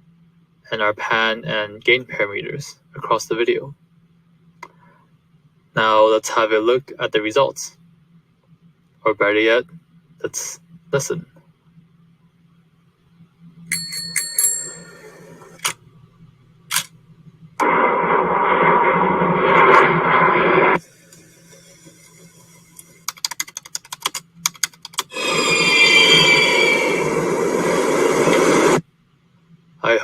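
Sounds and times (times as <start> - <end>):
bicycle bell ringing: 13.7 - 15.6
steady noise: 17.2 - 22.8, 25.1 - 28.9
scattered clicks: 22.8 - 25.1
falling whistle-like tones: 25.1 - 27.7.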